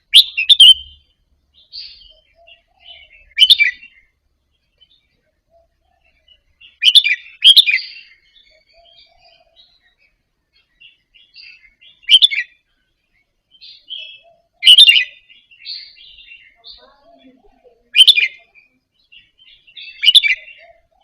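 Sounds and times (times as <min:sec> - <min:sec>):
soft bird chattering notes: 0:00.0 - 0:01.0, 0:13.6 - 0:21.0
bird song phrases: 0:00.0 - 0:21.0.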